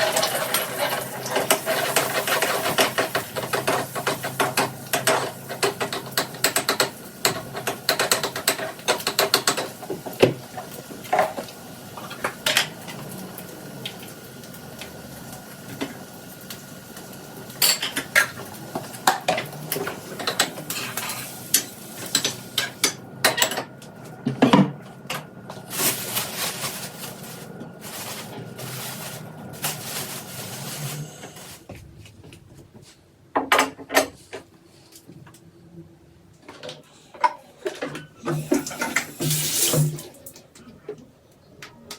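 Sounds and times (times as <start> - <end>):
dishes and cutlery clinking: 17.6 - 23.7.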